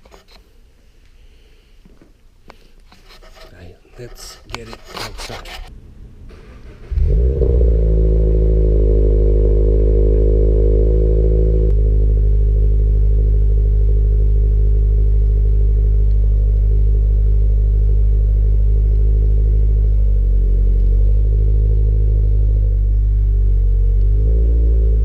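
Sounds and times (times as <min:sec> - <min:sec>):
car engine droning at low revs: 0:05.7 - 0:25.0.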